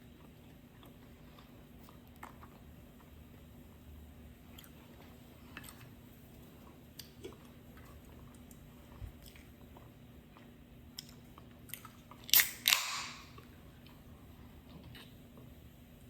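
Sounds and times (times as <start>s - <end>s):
loud crunching bites: 12.3s - 13.4s.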